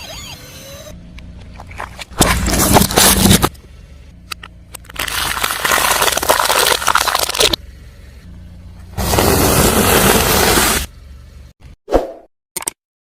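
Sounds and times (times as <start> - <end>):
car tyre crushing crunchy objects: 1.4 - 3.6, 4.7 - 7.6, 8.9 - 10.9.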